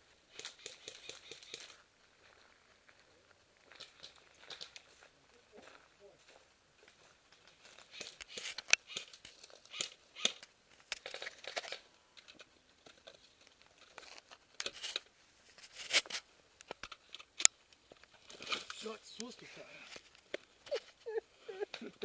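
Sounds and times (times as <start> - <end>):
rustling and crackling movement: 0.0 - 22.0
sharp clicks: 0.3 - 1.8, 7.9 - 12.4.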